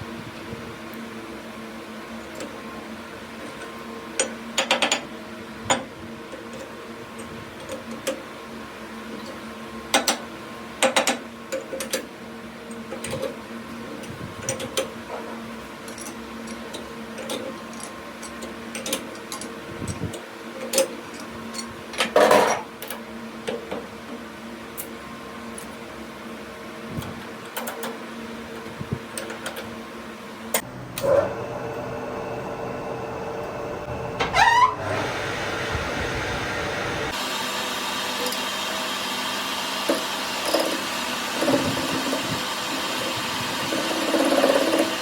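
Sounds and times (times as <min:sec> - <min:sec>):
machine motor hum: 0:30.6 - 0:38.4.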